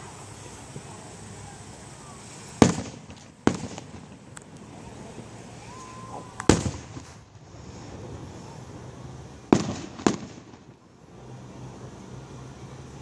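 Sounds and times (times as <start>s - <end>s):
fireworks shells bursting: 1.7s - 4.7s, 5.6s - 8.2s, 9.5s - 10.8s.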